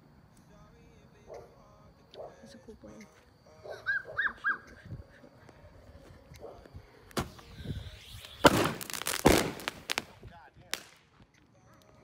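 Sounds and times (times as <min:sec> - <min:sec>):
fireworks crackling: 0:06.7 - 0:12.0
fireworks bangs: 0:07.1 - 0:11.2.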